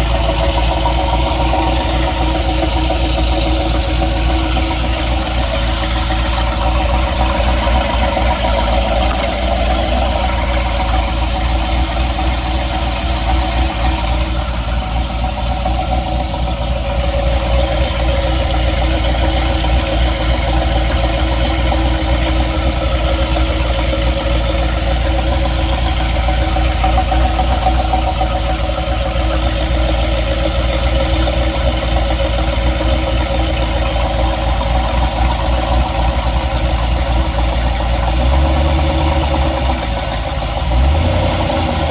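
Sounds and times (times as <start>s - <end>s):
engine idling with knocking: 0.0s - 41.9s.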